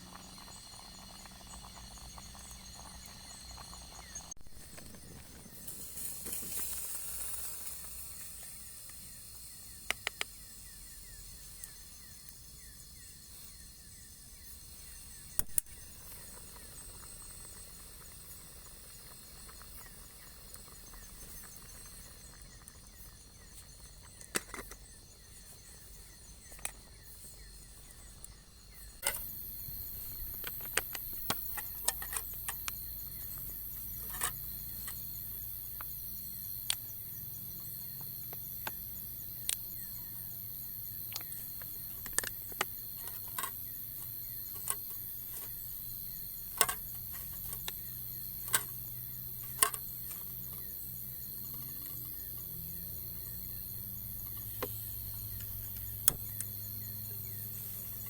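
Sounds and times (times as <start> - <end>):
steady hiss: 0.0 - 13.8
insect trill: 0.0 - 58.0.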